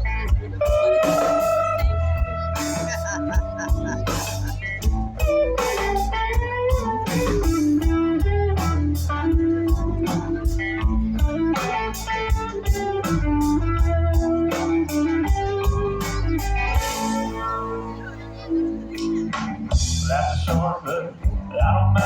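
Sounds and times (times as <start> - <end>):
bass guitar: 0.0 - 22.0
drums: 0.0 - 22.0
electric guitar lead: 0.0 - 22.0.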